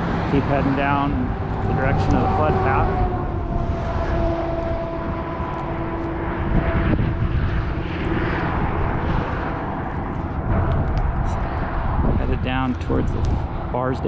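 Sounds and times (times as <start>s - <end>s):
humming tone: 0.0s - 12.3s
engine low rumble: 0.0s - 14.0s.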